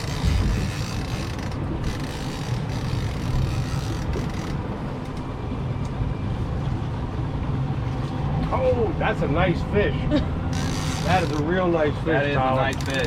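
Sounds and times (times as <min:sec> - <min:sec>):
boat engine running: 0:00.0 - 0:13.0
water noise: 0:00.0 - 0:13.0
wind: 0:00.0 - 0:13.0.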